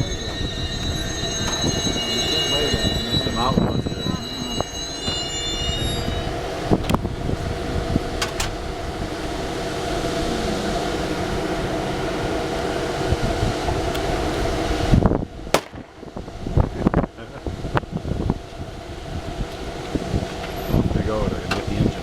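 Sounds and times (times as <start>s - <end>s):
faint held tone: 0.0s - 7.1s
rail car rumbling on track: 0.0s - 22.0s.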